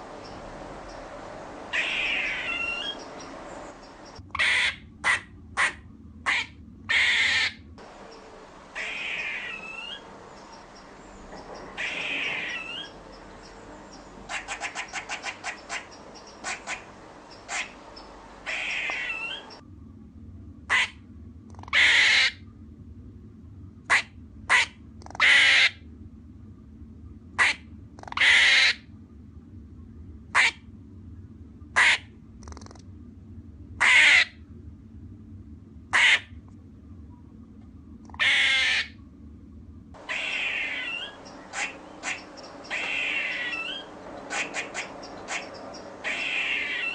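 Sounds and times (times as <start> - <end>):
squirrel barking: 0.0 - 19.6, 21.6 - 22.4, 23.9 - 25.8, 27.4 - 28.8, 33.8 - 34.4, 38.1 - 38.9, 40.0 - 46.9
squirrel clicking chucks: 32.4 - 32.8.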